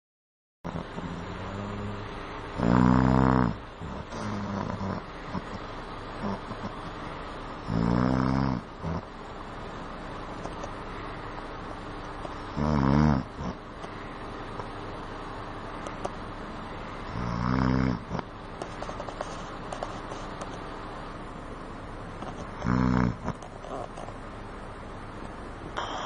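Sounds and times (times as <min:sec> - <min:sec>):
man snoring heavily: 0:00.7 - 0:05.6, 0:06.2 - 0:06.8, 0:07.6 - 0:09.1, 0:12.5 - 0:13.6, 0:17.1 - 0:18.3, 0:22.6 - 0:23.4, 0:25.8 - 0:26.0.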